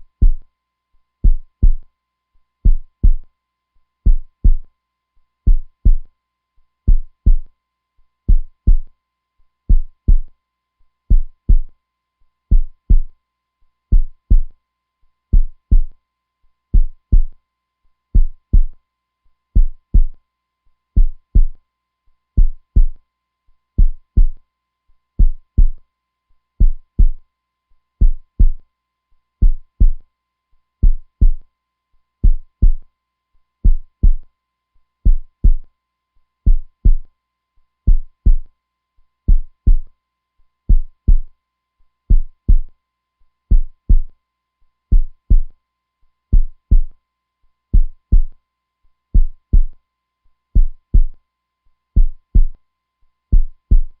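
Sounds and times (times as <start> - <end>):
heartbeat thuds: 0.0 - 0.4, 1.2 - 1.8, 2.6 - 3.2, 4.1 - 4.6, 5.5 - 6.0, 6.9 - 7.5, 8.3 - 8.9, 9.7 - 10.3, 11.1 - 11.7, 12.5 - 13.1, 13.9 - 14.5, 15.3 - 15.9, 16.8 - 17.3, 18.2 - 18.8, 19.6 - 20.2, 21.0 - 21.6, 22.4 - 23.0, 23.8 - 24.4, 25.2 - 25.8, 26.6 - 27.2, 28.0 - 28.6, 29.4 - 30.0, 30.8 - 31.4, 32.2 - 32.8, 33.6 - 34.2, 35.1 - 35.6, 36.5 - 37.0, 37.9 - 38.4, 39.3 - 39.9, 40.7 - 41.3, 42.1 - 42.7, 43.5 - 44.1, 44.9 - 45.5, 46.3 - 46.9, 47.8 - 48.3, 49.2 - 49.7, 50.6 - 51.1, 52.0 - 52.6, 53.3 - 53.9.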